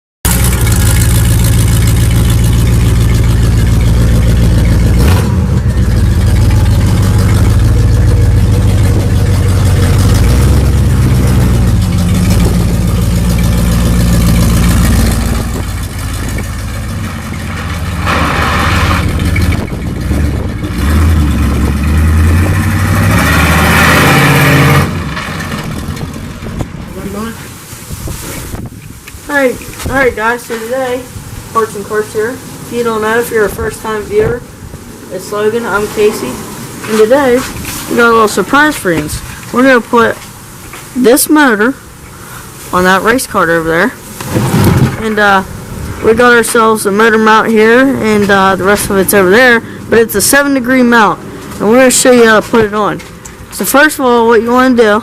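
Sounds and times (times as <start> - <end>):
go-kart engine revving: 0.3 - 27.7, 42.8 - 55.0.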